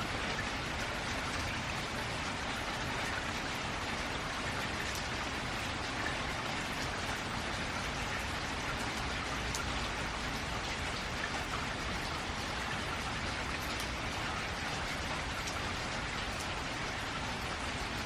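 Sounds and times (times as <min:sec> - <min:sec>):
rain on a metal roof: 0:00.0 - 0:18.0.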